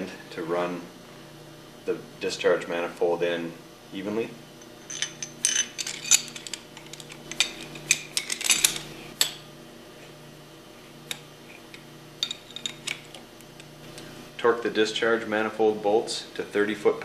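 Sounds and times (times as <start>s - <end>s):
faint steady hum: 0.0s - 17.0s
metal bolts clinking: 4.7s - 9.4s.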